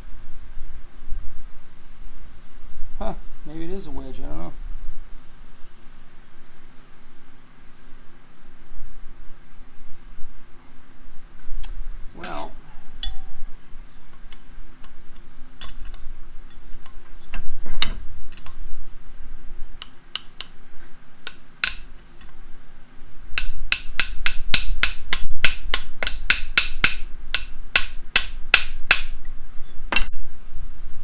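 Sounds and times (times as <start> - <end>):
hammer striking steel vise: 12.2 - 13.3, 21.2 - 22.0, 23.4 - 29.2.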